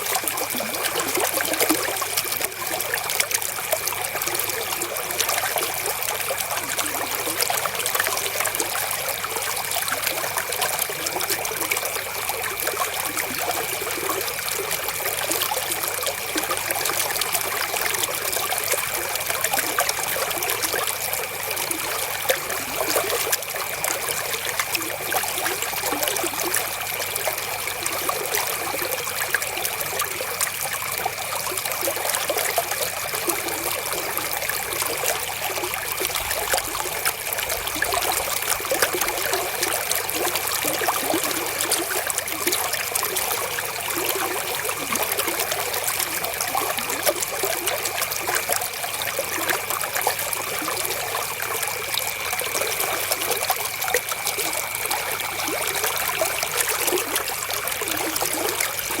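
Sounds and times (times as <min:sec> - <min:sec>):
river water flowing: 0:00.0 - 0:59.0.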